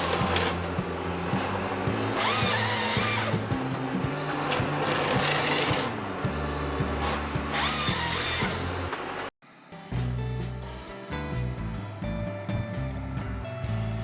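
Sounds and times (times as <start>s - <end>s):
music with steady bass line: 0.0s - 8.9s, 9.8s - 14.0s
harsh machine noise bursts: 0.0s - 9.7s.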